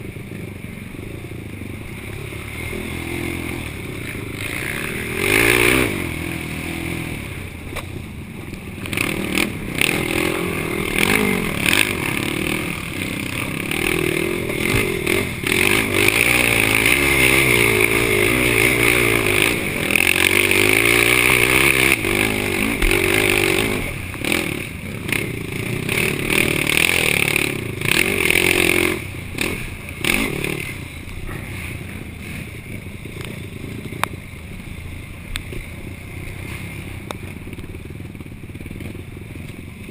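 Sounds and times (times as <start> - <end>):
quad engine revving: 1.8 - 7.7, 8.7 - 34.1.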